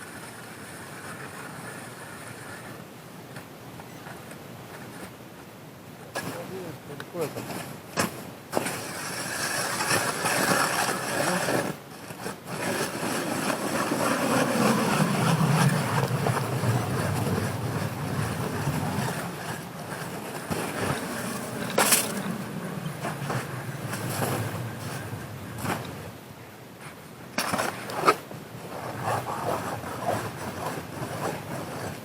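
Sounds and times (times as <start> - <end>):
wind noise on microphone: 7.4 - 26.4
vehicle engine running: 20.6 - 26.2.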